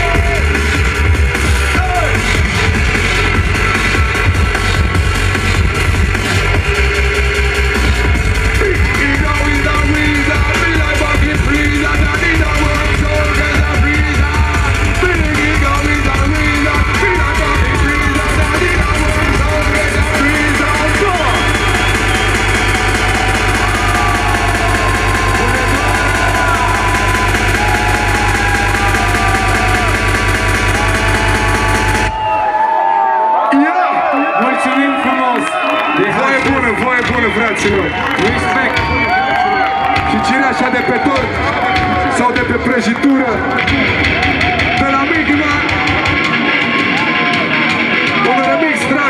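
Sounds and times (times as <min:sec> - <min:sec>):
electronic dance music: 0:00.0 - 0:49.0
melodic vocals: 0:08.6 - 0:32.6.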